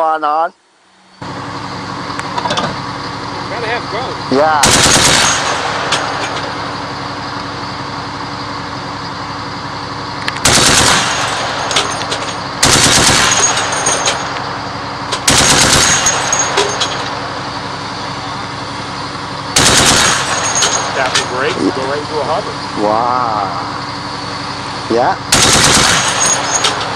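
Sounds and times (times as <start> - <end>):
steady hum: 0.0 - 26.9
machine-gun bursts: 4.6 - 6.4, 10.4 - 14.3, 15.2 - 17.0, 19.6 - 21.3, 25.3 - 26.9.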